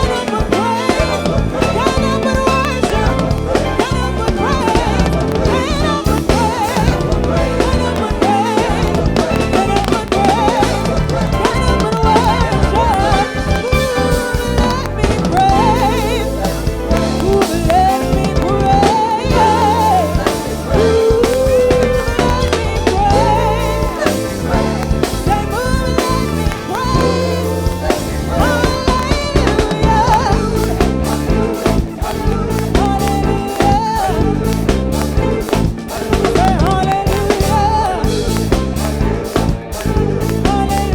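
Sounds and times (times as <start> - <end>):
bass: 0.0 - 40.9
drum kit groove: 0.0 - 40.9.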